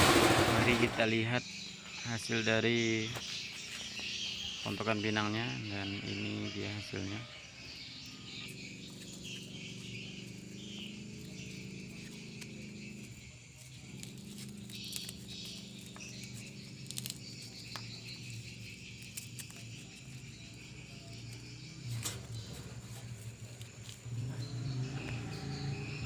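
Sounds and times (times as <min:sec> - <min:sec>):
machine motor humming: 0:00.0 - 0:01.0.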